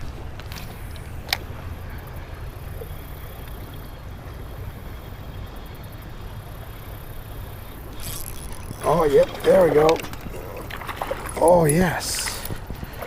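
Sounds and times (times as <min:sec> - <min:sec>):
creek water rushing: 0:07.6 - 0:13.0.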